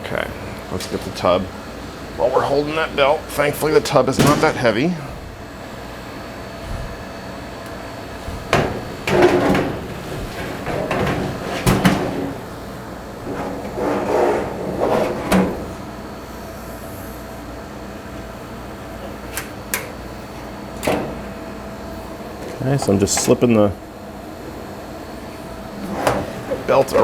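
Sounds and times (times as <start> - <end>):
metal knocks and scrapes: 4.2 - 5.7, 6.5 - 16.2, 25.7 - 27.0.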